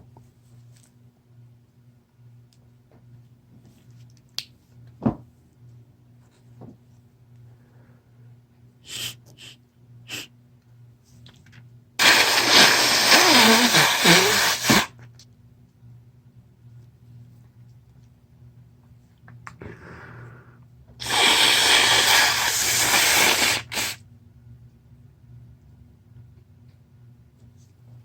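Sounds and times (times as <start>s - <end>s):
person blowing nose: 8.8s - 10.3s, 12.0s - 15.0s, 19.6s - 24.0s
person sniffing: 8.8s - 10.3s, 12.0s - 14.9s, 19.6s - 24.0s.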